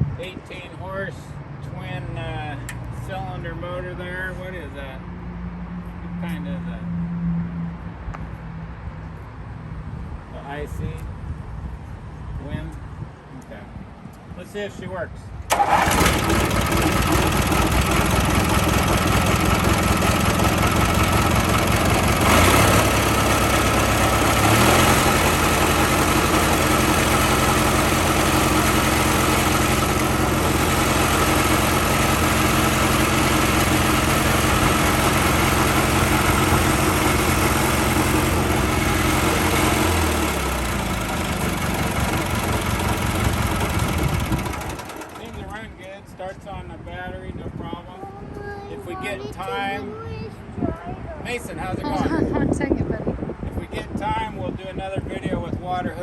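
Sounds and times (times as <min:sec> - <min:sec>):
pressure washer engine running: 0:15.5 - 0:45.6.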